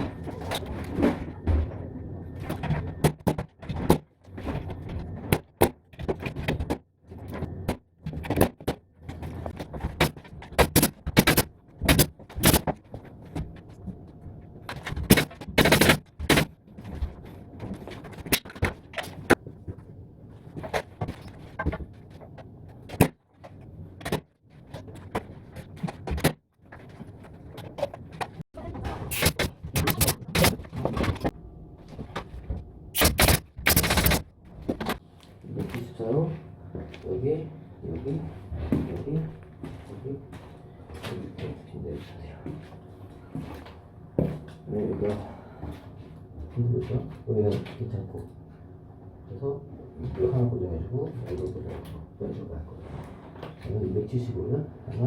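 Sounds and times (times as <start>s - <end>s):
nail gun firing into wood: 10.0s - 12.8s, 15.1s - 16.5s, 33.0s - 34.2s.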